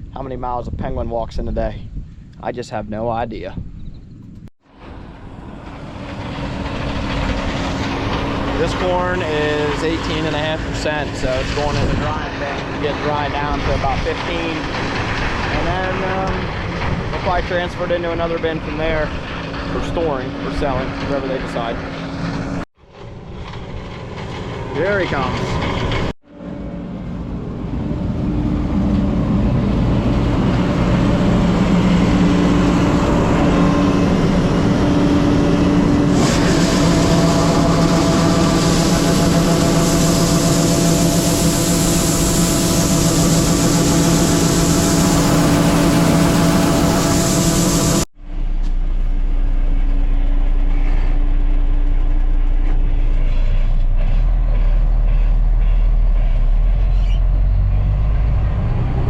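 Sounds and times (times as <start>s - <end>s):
low engine rumble: 0.0s - 59.0s
combine harvester engine drone: 3.8s - 59.0s
loud hiss: 36.1s - 48.0s.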